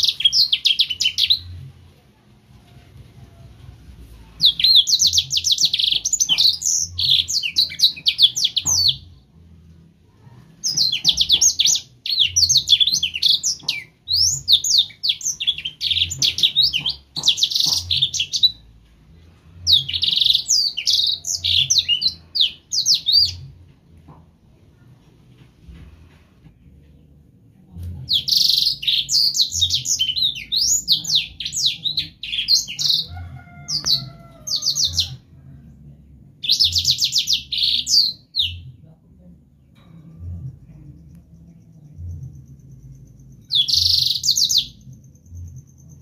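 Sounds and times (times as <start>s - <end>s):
canary twittering song: 4.4s - 9.2s, 10.6s - 18.7s, 19.7s - 23.5s, 28.1s - 35.2s, 36.4s - 38.6s, 40.7s - 46.0s.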